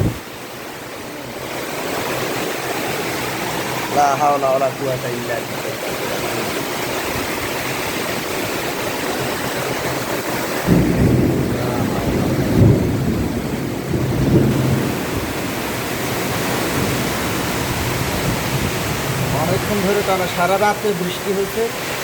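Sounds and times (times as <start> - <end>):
thunder rumbling: 0.0 - 0.3, 8.1 - 20.4
heavy rain pouring: 0.0 - 22.0.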